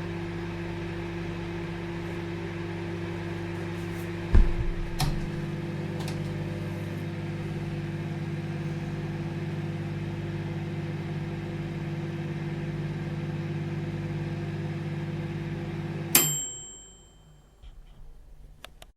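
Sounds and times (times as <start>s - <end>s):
microwave oven humming: 0.0s - 18.8s
microwave click: 4.3s - 6.5s, 16.1s - 18.8s
microwave bell ding: 16.1s - 17.9s.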